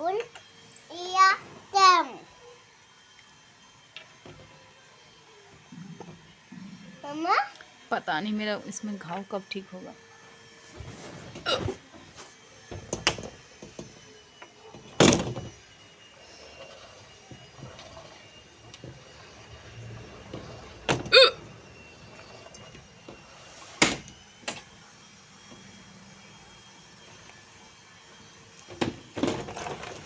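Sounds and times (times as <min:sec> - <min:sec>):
woman hiccupping: 0:21.1 - 0:21.4.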